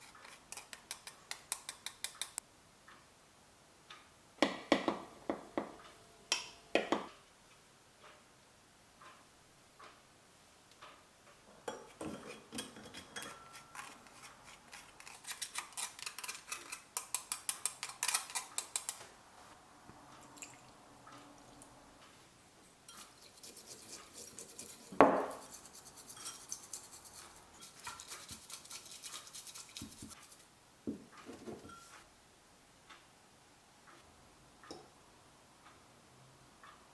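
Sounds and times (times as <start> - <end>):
whisk scraping in a bowl: 0.0 - 2.2, 12.0 - 18.9, 22.9 - 30.4.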